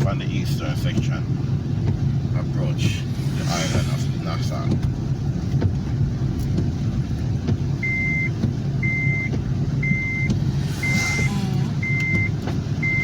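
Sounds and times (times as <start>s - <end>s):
car engine rumble: 0.0s - 13.0s
road noise: 0.0s - 13.0s
high electronic beeps: 7.8s - 13.0s.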